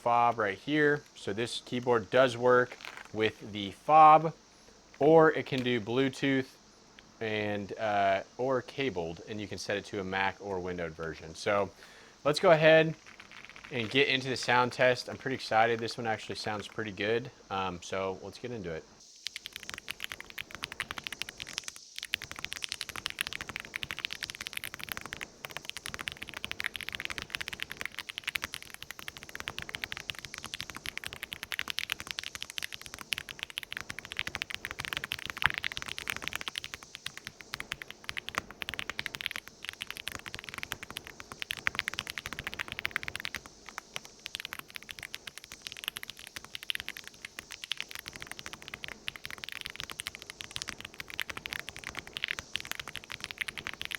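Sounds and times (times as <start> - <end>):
mechanical keyboard typing: 13.0 - 16.7, 19.3 - 53.9.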